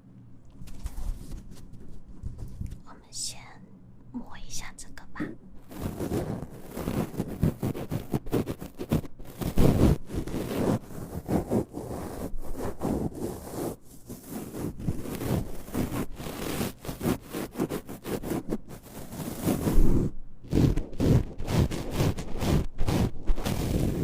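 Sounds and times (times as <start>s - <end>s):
ear scraper scraping: 5.6s - 24.0s.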